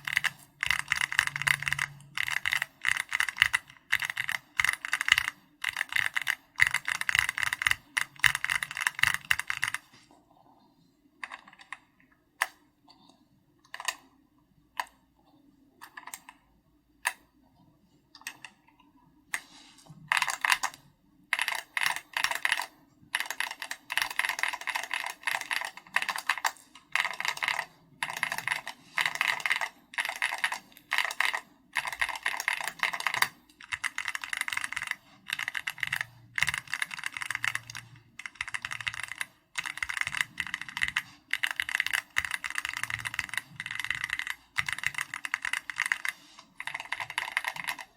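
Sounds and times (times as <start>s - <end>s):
mechanical keyboard typing: 0.0s - 9.9s, 11.2s - 12.6s, 13.7s - 14.1s, 15.8s - 16.4s, 20.1s - 47.9s.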